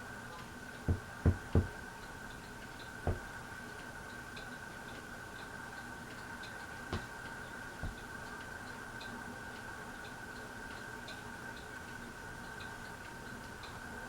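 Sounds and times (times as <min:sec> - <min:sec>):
ceiling fan humming: 0:00.0 - 0:14.0
short low knocks: 0:00.9 - 0:01.8, 0:03.0 - 0:03.3, 0:06.9 - 0:07.2.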